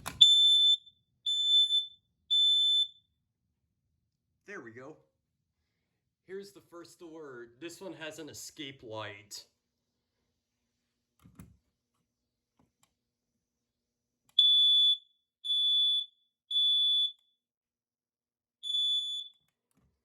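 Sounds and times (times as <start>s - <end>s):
smoke alarm beeping: 0.0s - 3.2s, 14.3s - 17.3s, 18.6s - 19.5s.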